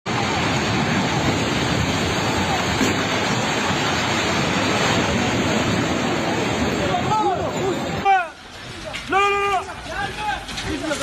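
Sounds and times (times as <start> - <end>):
loud rushing noise: 0.1 - 8.4.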